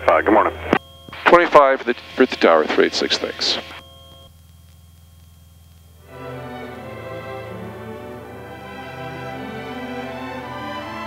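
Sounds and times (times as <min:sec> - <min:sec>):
steady low hum: 0:00.0 - 0:10.6
orchestral string music: 0:06.0 - 0:11.0.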